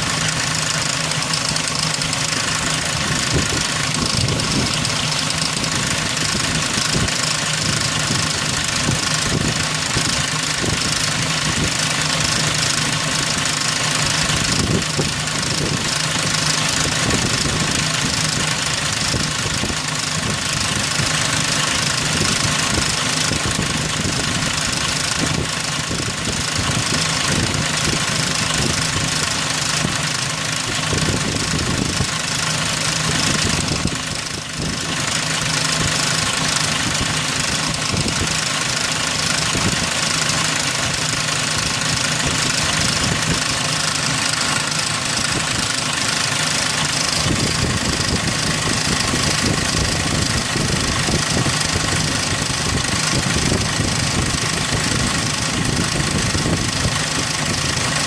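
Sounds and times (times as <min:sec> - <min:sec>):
engine idling with knocking rattle: 0:00.0 - 0:58.0.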